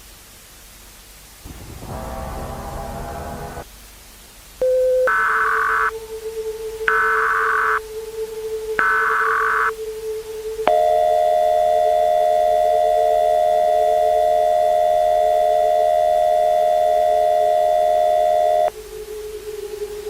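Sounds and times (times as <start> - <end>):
faint low hum: 1.4 - 20.0
loud two-tone alert chord: 1.5 - 3.6.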